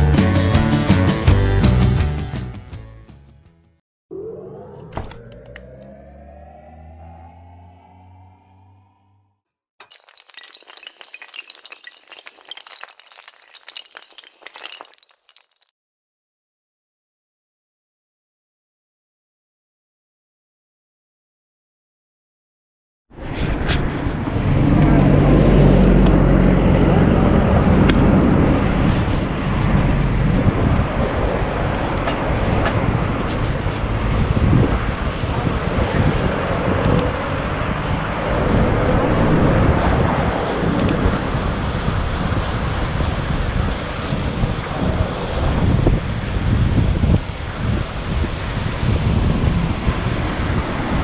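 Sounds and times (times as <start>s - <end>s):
traffic running past: 5.5s - 9.2s
wind buffeting microphone: 26.6s - 51.0s.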